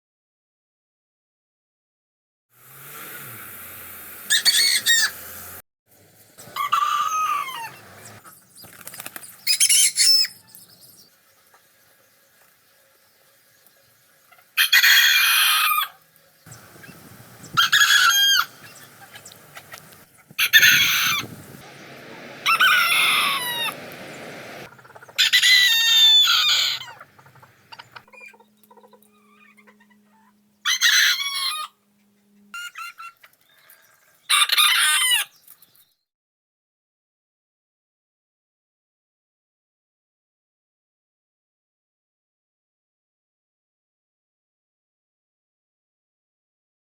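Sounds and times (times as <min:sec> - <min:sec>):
sped-up rooster crows: 0:06.6 - 0:07.8, 0:14.6 - 0:16.0, 0:16.8 - 0:19.3, 0:20.4 - 0:28.2, 0:33.6 - 0:35.3.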